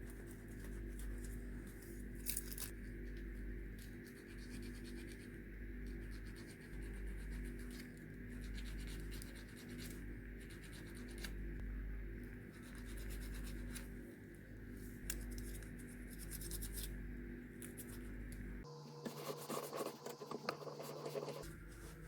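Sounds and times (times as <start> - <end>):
faint steady hum: 0.0 - 22.0
scratching strokes on wooden cue: 19.0 - 22.0.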